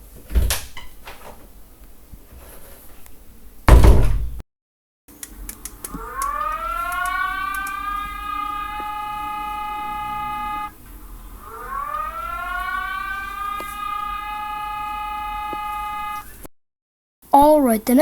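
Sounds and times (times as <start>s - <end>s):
siren-like alarm wail: 5.8s - 16.5s.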